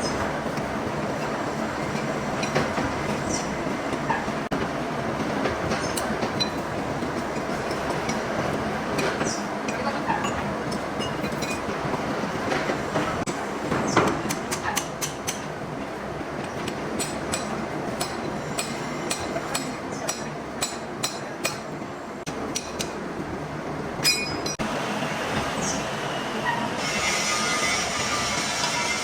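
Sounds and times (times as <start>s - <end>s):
machine shop din: 0.0s - 29.0s
sharp metal taps and clinks: 24.0s - 24.6s.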